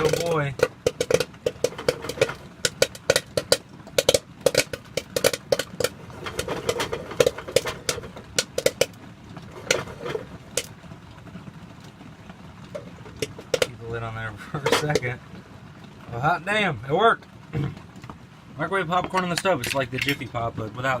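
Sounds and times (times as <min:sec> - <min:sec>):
popcorn popping in a covered pot: 0:00.0 - 0:11.2, 0:12.6 - 0:15.2.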